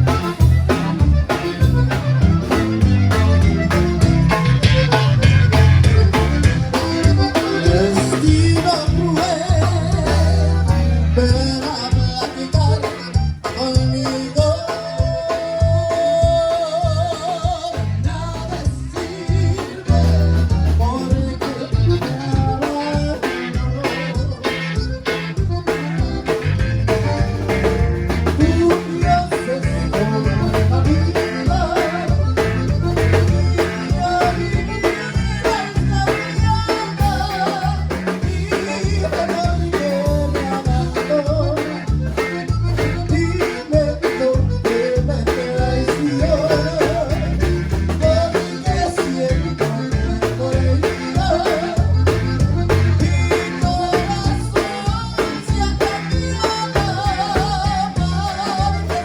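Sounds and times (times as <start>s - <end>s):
drum beat: 0.0s - 10.9s, 11.8s - 59.0s
bajo sexto guitar: 0.0s - 59.0s
bass: 0.0s - 59.0s
button accordion: 0.0s - 59.0s
live band playing: 0.0s - 59.0s.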